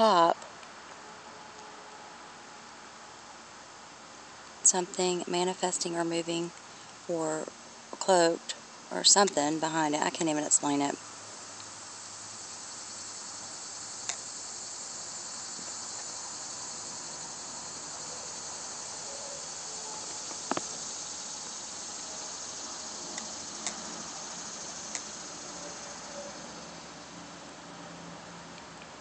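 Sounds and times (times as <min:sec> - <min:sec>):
insect chirring: 0:04.6 - 0:27.6.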